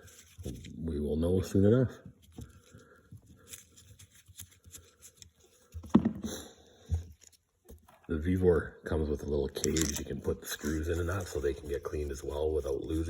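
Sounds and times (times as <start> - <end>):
tools and small parts clicking: 9.6 - 10.2.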